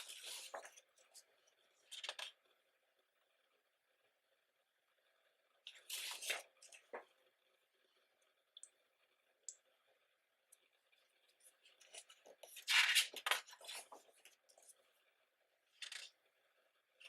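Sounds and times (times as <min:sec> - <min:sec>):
pages turning: 0:00.0 - 0:00.9, 0:01.9 - 0:02.3, 0:05.7 - 0:07.0, 0:11.8 - 0:14.7, 0:15.8 - 0:16.1.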